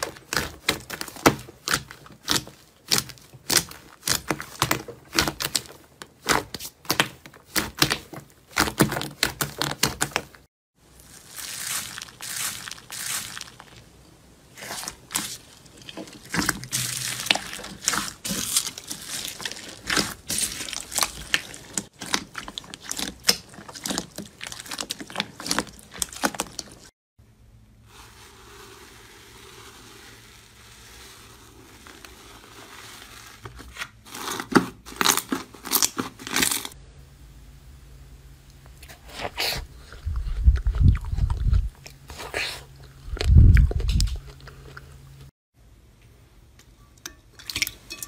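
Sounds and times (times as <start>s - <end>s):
crunchy slime crackling: 0.0s - 26.9s, 27.9s - 36.8s.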